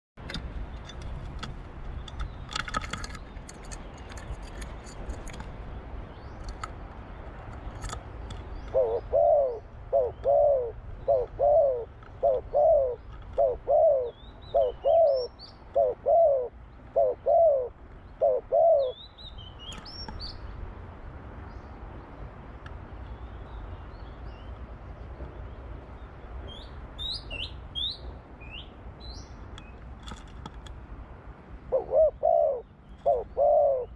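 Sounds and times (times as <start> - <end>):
small birds chirping: 1.8 - 20.6, 21.4 - 30.0, 31.7 - 33.9
dove cooing: 8.6 - 19.0, 31.7 - 33.9.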